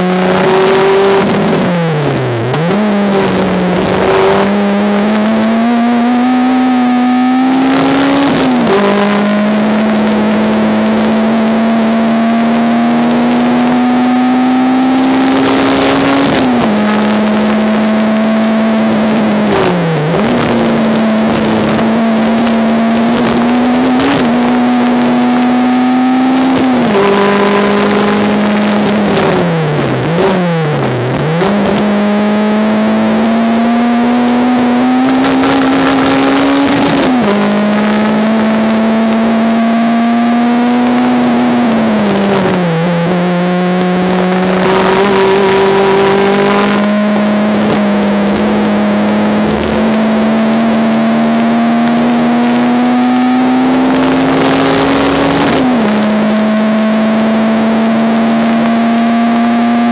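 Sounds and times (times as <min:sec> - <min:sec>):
race car engine revving: 0:00.0 - 0:59.9.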